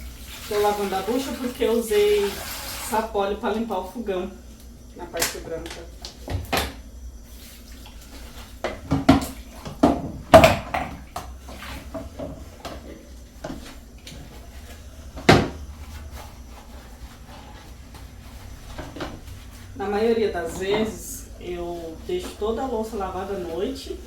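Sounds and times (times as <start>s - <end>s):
faint running water: 0.0s - 4.2s.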